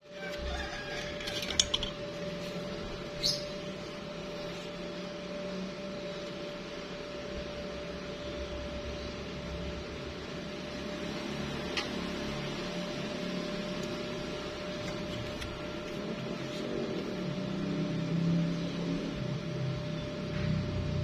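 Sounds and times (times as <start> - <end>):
electrical hum: 0.0 - 21.0.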